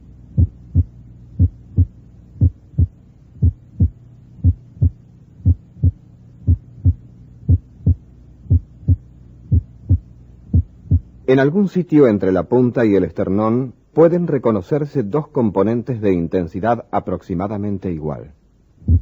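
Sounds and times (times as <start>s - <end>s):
steady low hum: 0.0s - 19.0s
heartbeat lub-dub: 0.3s - 11.2s, 18.8s - 19.0s.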